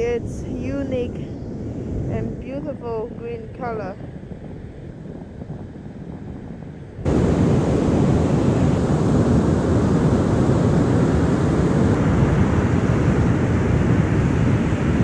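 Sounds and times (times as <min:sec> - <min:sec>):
wind buffeting microphone: 0:00.0 - 0:15.0
heavy ocean surf: 0:07.0 - 0:15.0.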